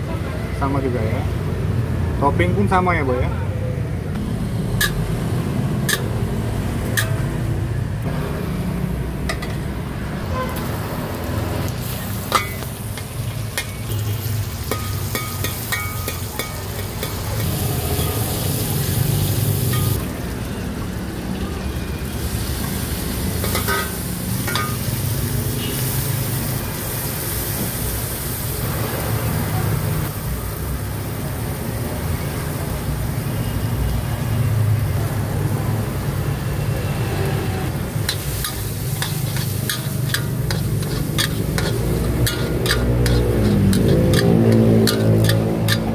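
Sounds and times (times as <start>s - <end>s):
metal spatula scraping wok: 11.7s - 20.0s, 22.5s - 26.4s, 37.8s - 45.9s
sharp metal clank: 23.4s - 24.9s, 38.1s - 45.9s.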